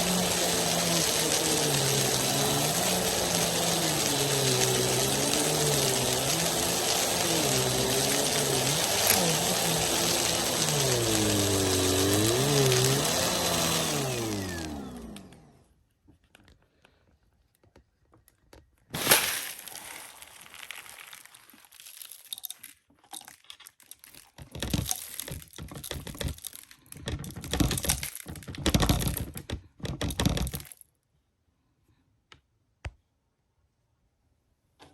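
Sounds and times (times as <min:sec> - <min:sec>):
vacuum cleaner running: 0:00.0 - 0:15.6, 0:19.0 - 0:20.2
clattering and rattling: 0:21.8 - 0:30.8.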